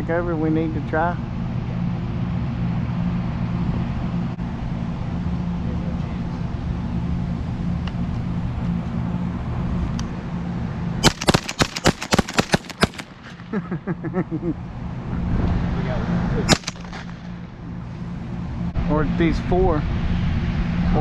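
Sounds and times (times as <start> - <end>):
shotgun shots: 11.0 - 13.6, 16.5 - 17.4.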